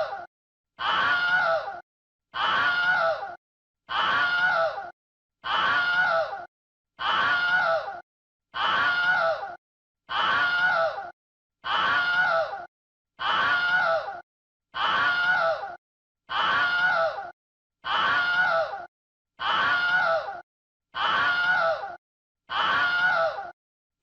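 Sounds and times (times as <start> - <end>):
person screaming: 0.8 - 1.8, 2.4 - 8.0, 8.6 - 14.2, 14.8 - 20.4, 21.0 - 23.5.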